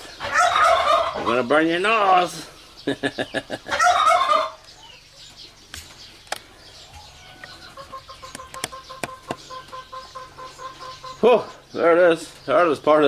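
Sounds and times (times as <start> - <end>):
turkey gobbling: 0.0 - 12.5
poultry clucking: 0.0 - 13.0.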